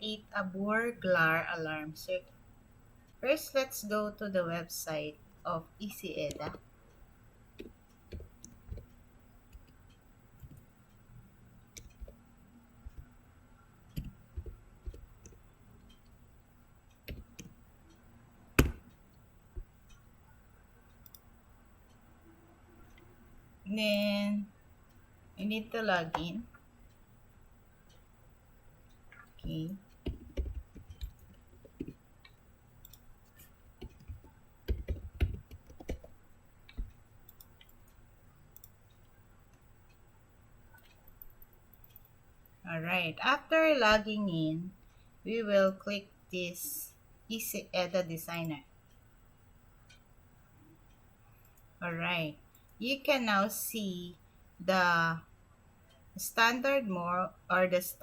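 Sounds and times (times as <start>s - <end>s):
computer mouse and keyboard clicks: 6.2s - 6.6s, 7.6s - 10.7s, 11.7s - 12.2s, 13.9s - 16.1s, 17.0s - 17.6s, 29.1s - 39.6s.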